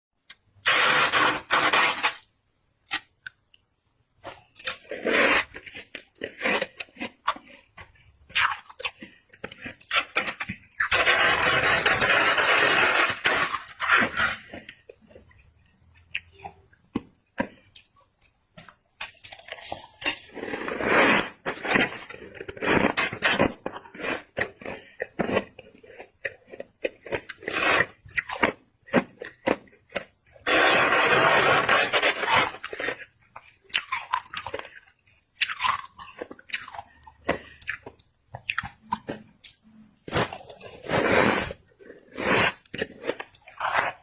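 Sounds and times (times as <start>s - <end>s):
frost being scraped: 0.6s - 2.3s, 4.6s - 7.7s, 9.5s - 14.8s, 19.4s - 26.1s, 30.4s - 33.0s, 40.1s - 44.0s
crunching and chewing frost: 4.2s - 44.0s.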